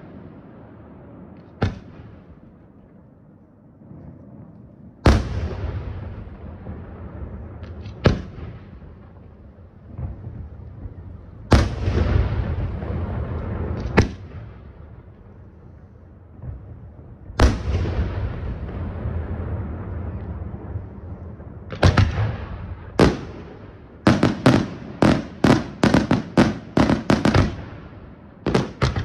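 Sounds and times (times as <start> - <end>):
echoing rumble: 0.0 - 29.0
firework booms: 0.0 - 29.0
small firework pops: 1.3 - 2.1, 7.6 - 8.6, 13.3 - 14.5, 28.5 - 29.0.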